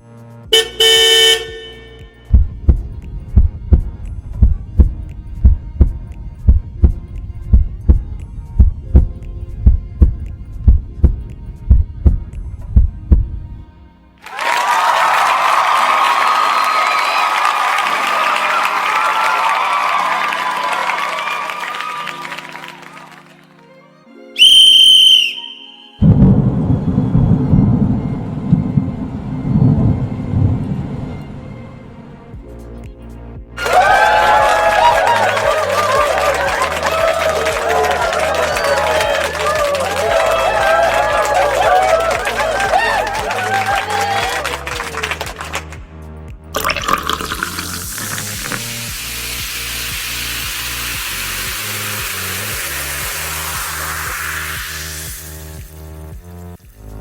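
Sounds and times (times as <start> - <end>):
whistle blast: 0.5 - 2.4, 24.4 - 26.3
heartbeat thumps: 2.2 - 13.6, 26.0 - 30.5
low thunder-like rumble: 26.0 - 32.3.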